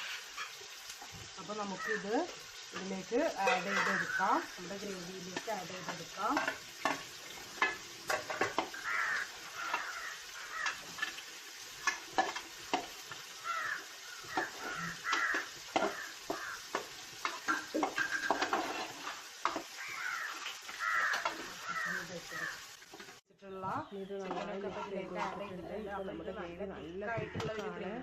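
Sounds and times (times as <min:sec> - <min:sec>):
spoon scraping a pan: 0:00.0 - 0:01.2, 0:01.8 - 0:23.2, 0:23.9 - 0:26.0
light sizzle: 0:00.0 - 0:28.0
bird calls: 0:03.5 - 0:04.6, 0:19.8 - 0:22.6.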